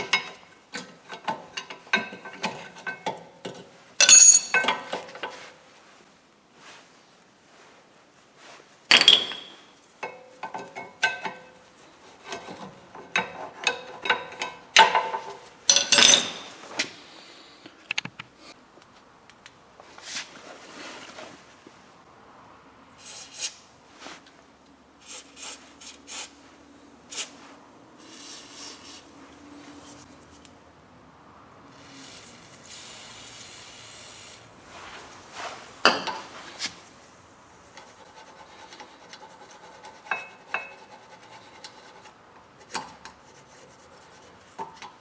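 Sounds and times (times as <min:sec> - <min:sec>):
metal tools clinking and scraping: 0:04.0 - 0:05.4, 0:12.3 - 0:16.7.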